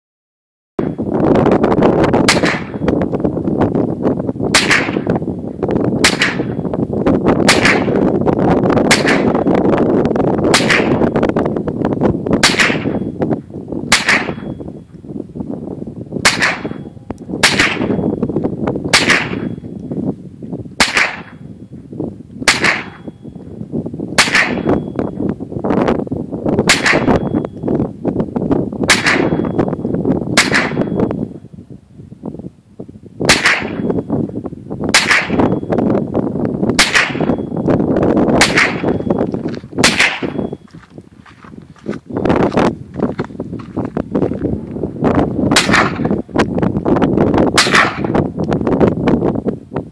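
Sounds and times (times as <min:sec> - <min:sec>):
rifle shots: 0:02.2 - 0:02.9, 0:04.5 - 0:05.2, 0:06.0 - 0:06.6, 0:07.4 - 0:08.1, 0:08.8 - 0:09.5, 0:10.5 - 0:11.2, 0:12.4 - 0:13.1, 0:13.9 - 0:14.5, 0:16.2 - 0:16.8, 0:17.4 - 0:18.0, 0:18.9 - 0:19.6, 0:20.8 - 0:21.4, 0:22.4 - 0:23.1, 0:24.2 - 0:24.8, 0:26.6 - 0:27.3, 0:28.9 - 0:29.5, 0:30.4 - 0:31.0, 0:33.3 - 0:33.9, 0:34.9 - 0:35.6, 0:36.8 - 0:37.4, 0:38.4 - 0:39.0, 0:39.8 - 0:40.5, 0:45.5 - 0:46.2, 0:47.5 - 0:48.2.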